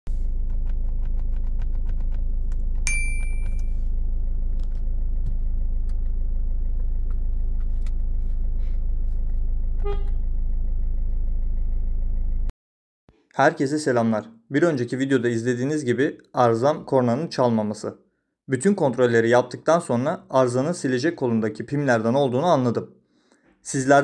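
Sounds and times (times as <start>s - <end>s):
car engine humming: 0.2s - 12.5s
short high beep: 2.9s - 3.8s
car horn toot: 9.8s - 10.2s.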